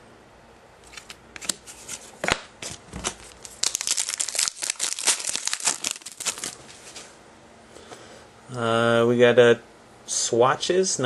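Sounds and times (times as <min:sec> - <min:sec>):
wrapper crinkling: 0:03.0 - 0:07.0.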